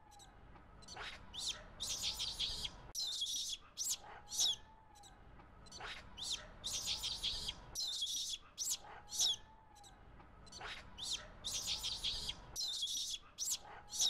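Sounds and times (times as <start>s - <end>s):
high-pitched animal chirping: 0.9s - 4.6s, 6.2s - 9.4s, 10.6s - 14.0s.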